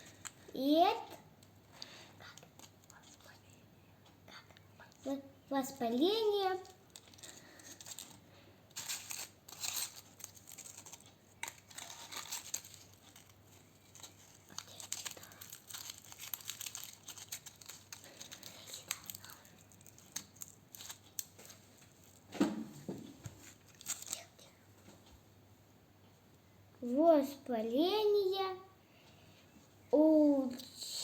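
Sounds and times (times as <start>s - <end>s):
small crackles: 6.5s - 22.3s, 23.2s - 25.1s
paper crinkling and rustling: 6.6s - 22.3s, 23.2s - 24.6s.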